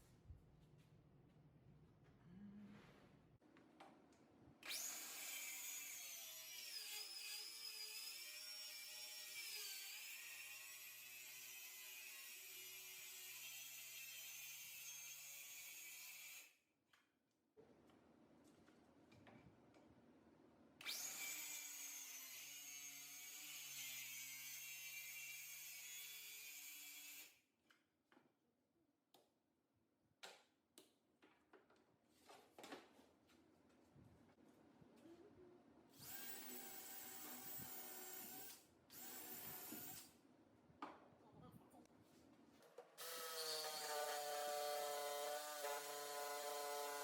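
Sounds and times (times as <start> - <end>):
small power tool whirring: 4.6 - 16.5, 20.8 - 27.3, 36.0 - 40.2, 43.0 - 47.0
power tool motor whining: 36.0 - 40.1.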